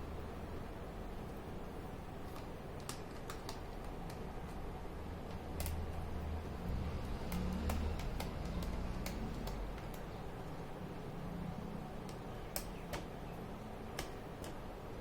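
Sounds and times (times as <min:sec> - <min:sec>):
steady low hum: 0:00.0 - 0:15.0
light clicks and taps: 0:07.2 - 0:10.1.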